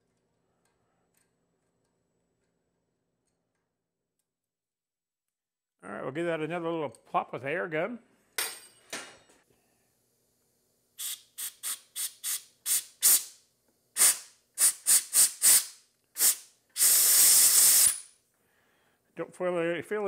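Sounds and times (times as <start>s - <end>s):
compressed air blow gun hissing: 11.0s - 13.4s, 14.0s - 18.1s.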